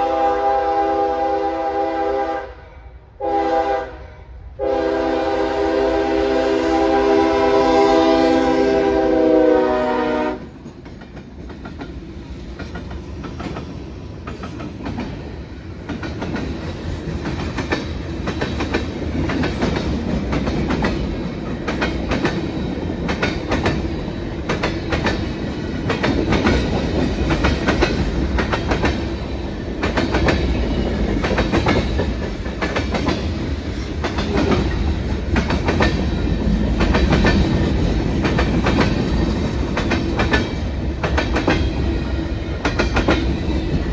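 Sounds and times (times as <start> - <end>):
train horn chord: 0.0 - 10.5
train wheels clattering over rails: 10.3 - 43.9.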